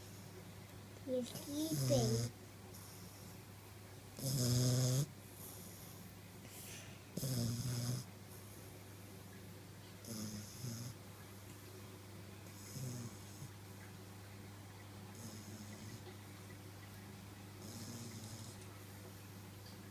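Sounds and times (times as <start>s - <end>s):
puppy snoring: 1.1s - 3.4s, 4.2s - 6.1s, 7.1s - 8.6s, 10.0s - 11.0s, 12.4s - 13.6s, 15.1s - 16.1s, 17.6s - 18.8s.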